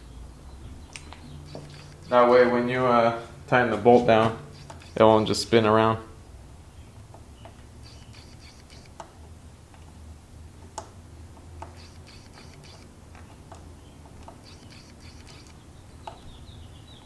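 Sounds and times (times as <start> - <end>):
small metal parts clicking: 0.9 - 2.1, 11.6 - 16.2.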